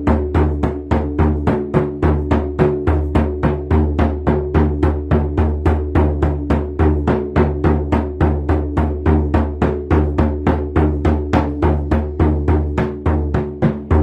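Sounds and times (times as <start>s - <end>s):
hand drum beating: 0.0s - 14.0s.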